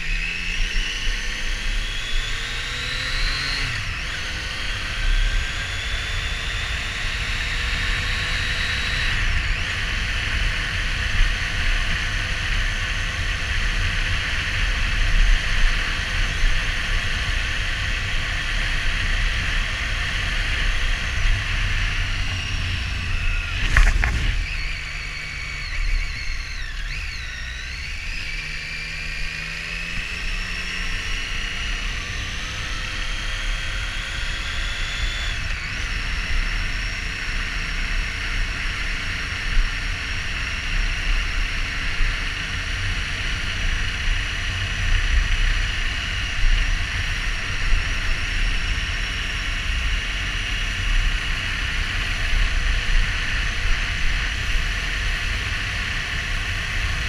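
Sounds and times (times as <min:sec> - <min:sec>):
motorcycle engine running: 0:00.0 - 0:57.0.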